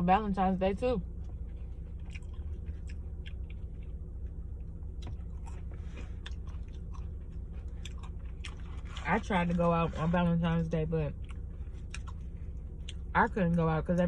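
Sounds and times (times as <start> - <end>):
steady low hum: 0.0 - 14.0
person chewing food: 1.2 - 10.2, 11.1 - 13.1.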